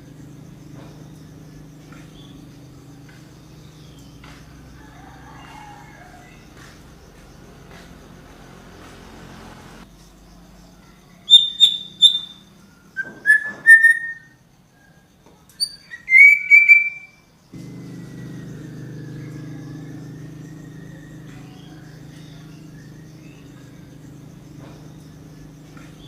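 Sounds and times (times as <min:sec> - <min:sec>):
bird whistling: 0:11.3 - 0:14.3, 0:15.6 - 0:17.2
low hum: 0:17.5 - 0:26.0.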